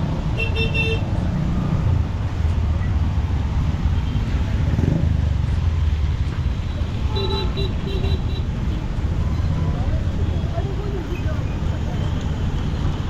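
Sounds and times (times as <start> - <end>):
road traffic rumble: 0.0 - 13.0
vehicle horn toot: 7.1 - 8.3.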